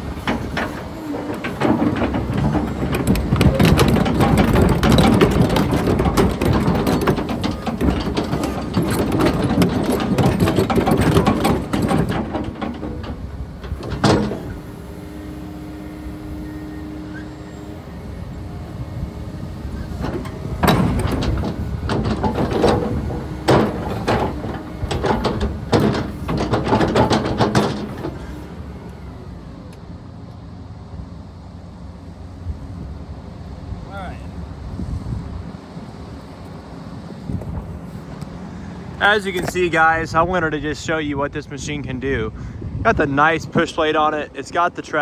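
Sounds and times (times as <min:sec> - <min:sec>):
tracks clanking and knocking: 0:00.0 - 0:29.8, 0:34.7 - 0:45.0
excavator engine and hydraulic hum: 0:00.0 - 0:45.0.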